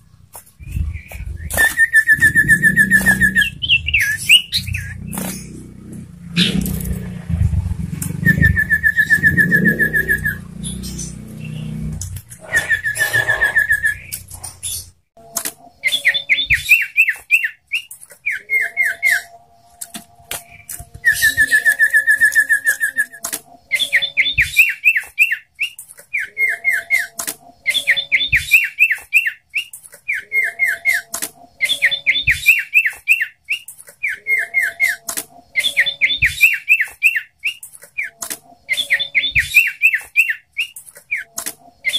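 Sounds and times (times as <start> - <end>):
low rumble: 0.1 - 14.0
bird buzzy trill: 0.5 - 17.9
bird whistling rapid notes: 0.6 - 5.6, 8.2 - 11.6, 12.4 - 14.2, 21.0 - 23.2.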